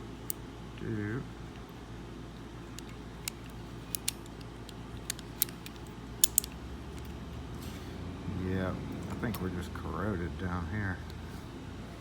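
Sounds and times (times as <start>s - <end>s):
steady low hum: 0.0s - 12.0s
lock mechanism clicking: 2.7s - 7.2s.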